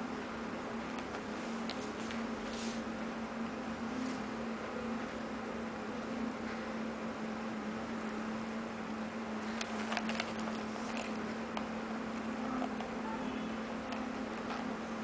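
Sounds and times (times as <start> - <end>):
low electrical hum: 0.0 - 15.0
packaging clicks and rustles: 9.4 - 13.0.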